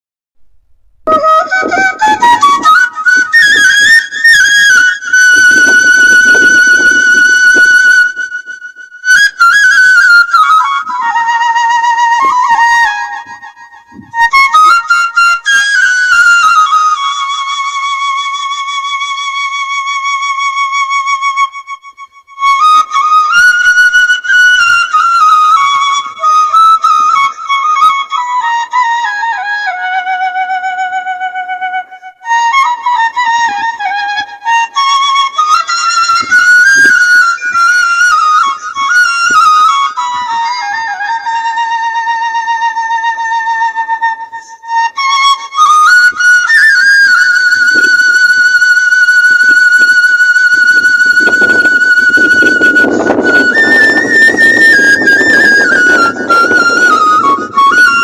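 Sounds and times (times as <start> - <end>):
solo flute melody: 1.0 - 58.0.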